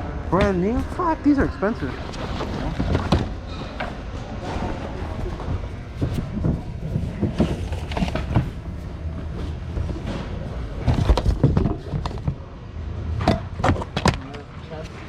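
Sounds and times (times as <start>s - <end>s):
items knocking and clattering: 2.0s - 12.5s, 13.1s - 14.5s.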